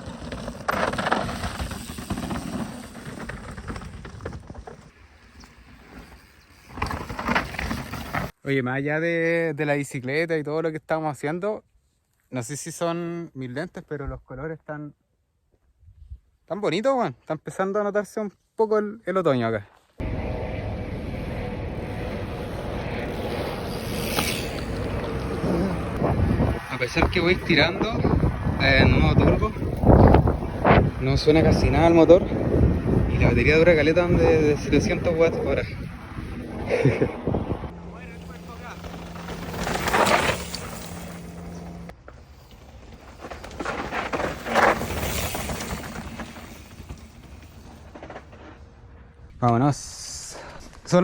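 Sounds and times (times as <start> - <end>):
tyres rolling on dirt trail: 0.0 - 8.4, 19.7 - 49.4
wind on microphone: 20.4 - 37.8.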